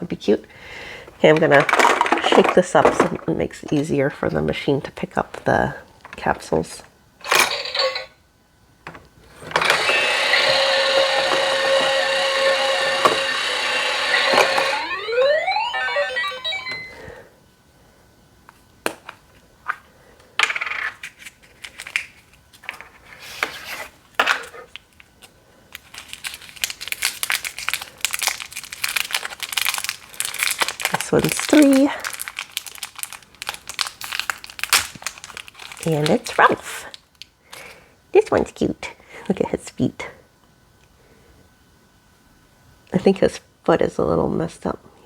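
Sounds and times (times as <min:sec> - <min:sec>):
plastic capsules rattling: 0:01.2 - 0:03.9, 0:25.8 - 0:36.4
electronic toy jingle: 0:09.8 - 0:17.1.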